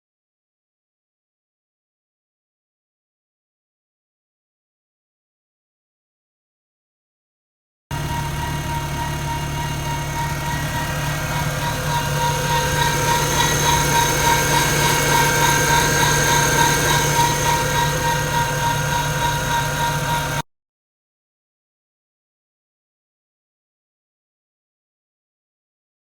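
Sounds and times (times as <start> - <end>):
car engine idling: 7.9 - 20.4
pulsing high whine: 7.9 - 20.4.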